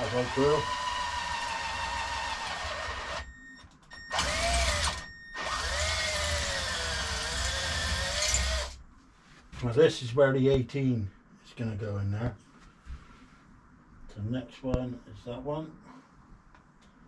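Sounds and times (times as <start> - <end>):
power drill boring metal tube: 0.0 - 3.2, 4.1 - 8.8.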